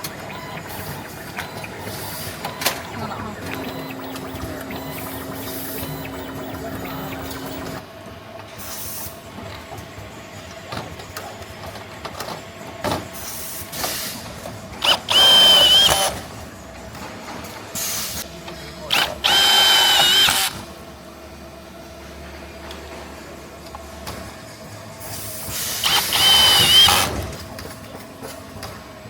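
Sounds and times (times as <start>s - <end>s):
power tool whining: 0.0s - 7.8s, 14.8s - 16.2s, 18.9s - 20.6s, 25.8s - 27.2s
workshop clatter: 0.0s - 29.0s.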